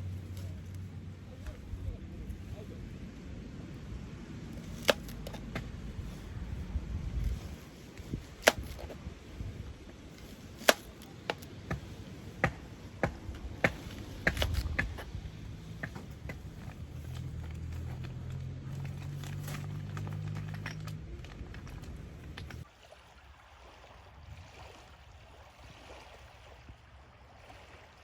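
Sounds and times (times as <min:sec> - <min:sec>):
firewood cracking: 0:04.5 - 0:22.6.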